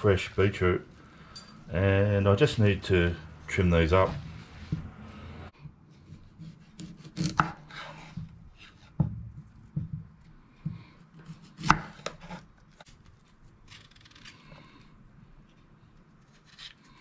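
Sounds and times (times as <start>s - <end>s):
knife scraping: 5.9s - 8.9s, 11.1s - 14.8s, 16.2s - 17.0s.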